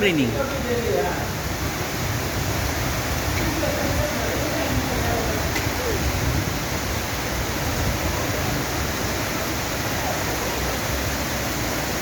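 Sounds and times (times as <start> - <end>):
heavy rain: 0.0 - 12.0
rushing floodwater: 0.0 - 12.0.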